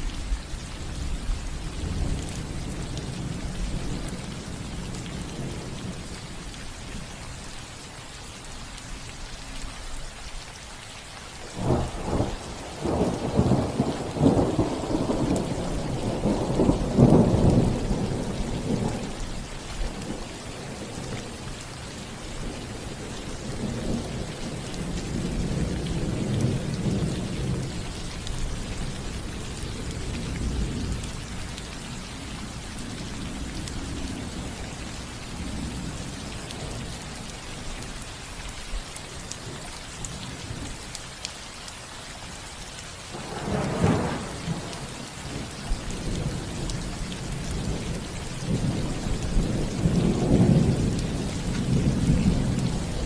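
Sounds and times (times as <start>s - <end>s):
rain on a roof: 0.0s - 53.0s
thunder rumbling: 11.5s - 19.2s, 43.1s - 53.0s.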